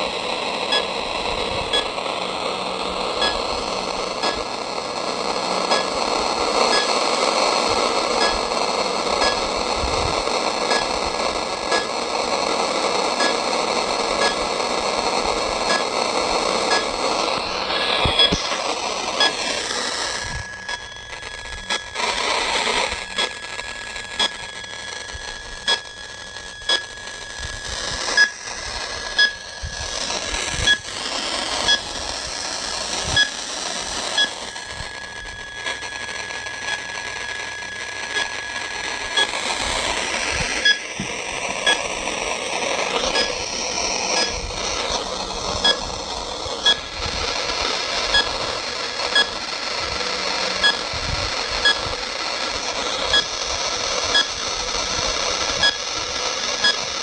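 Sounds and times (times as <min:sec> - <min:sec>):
steady background noise: 0:00.0 - 0:57.0
short electronic beeps: 0:06.7 - 0:07.0, 0:28.1 - 0:28.4, 0:29.1 - 0:29.6, 0:31.6 - 0:32.0, 0:34.1 - 0:39.4, 0:40.4 - 0:42.0, 0:43.0 - 0:44.4, 0:49.0 - 0:49.4, 0:50.6 - 0:50.9, 0:51.6 - 0:51.8, 0:54.1 - 0:54.4, 0:55.6 - 0:55.8.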